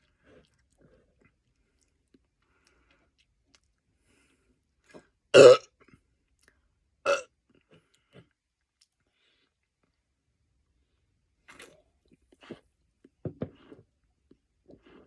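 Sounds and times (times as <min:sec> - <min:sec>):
person belching: 0:05.4 - 0:05.6.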